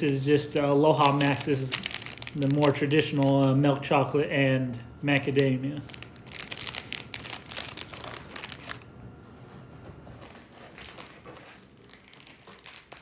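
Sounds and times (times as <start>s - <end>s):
snack packaging crinkling: 0.0s - 3.6s, 5.8s - 8.9s, 10.6s - 13.0s.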